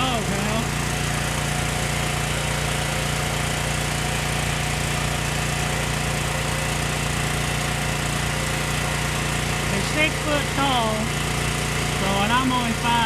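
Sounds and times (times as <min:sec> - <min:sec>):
small engine running steadily: 0:00.0 - 0:13.0.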